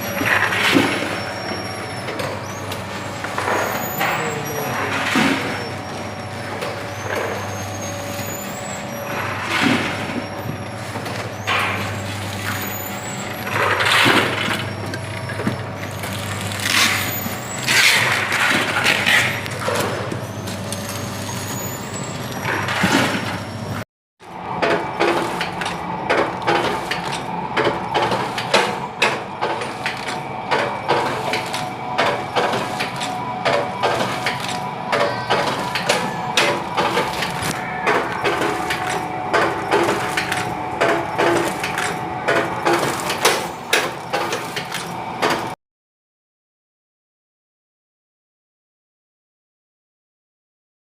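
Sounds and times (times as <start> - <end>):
packaging machine hum: 0.0 - 45.6
rapid machine clicks and clatter: 24.5 - 45.6.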